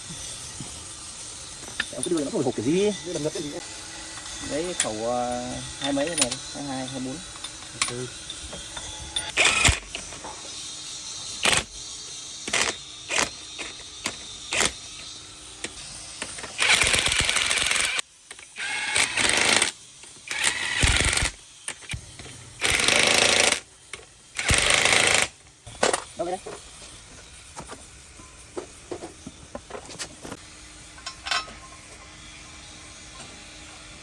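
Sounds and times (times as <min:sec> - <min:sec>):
metal tool clicks and clinks: 0:05.8 - 0:09.6, 0:31.0 - 0:31.8.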